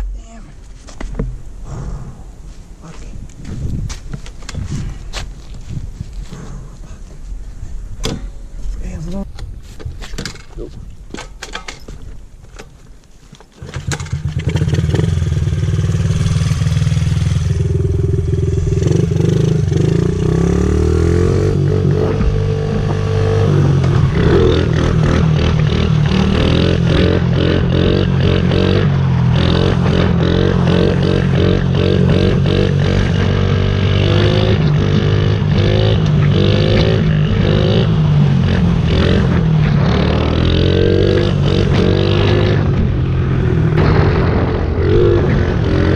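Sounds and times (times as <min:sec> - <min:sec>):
motorcycle engine revving: 0:13.6 - 0:45.9.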